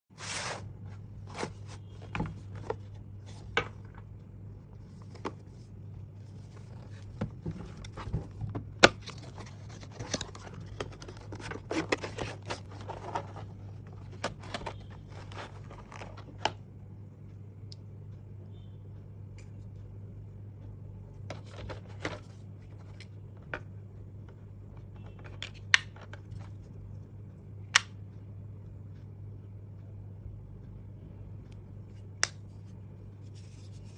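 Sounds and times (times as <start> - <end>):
cardboard and plastic packaging rustling: 0.2 - 4.1, 4.8 - 16.6
steady low hum: 0.2 - 33.9.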